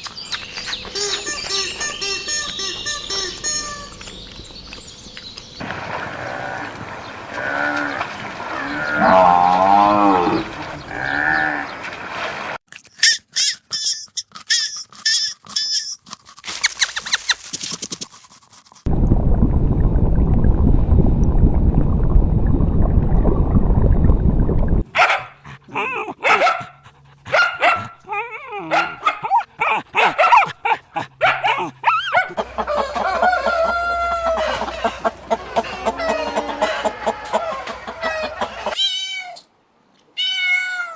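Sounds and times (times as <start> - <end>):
rapid high calls and clicks: 12.9 - 18.9
dense low noise: 18.9 - 24.8.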